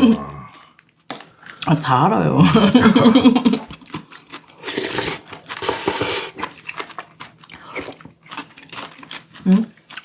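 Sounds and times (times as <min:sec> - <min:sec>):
chewing and biting food: 0:00.5 - 0:01.7, 0:03.5 - 0:10.0.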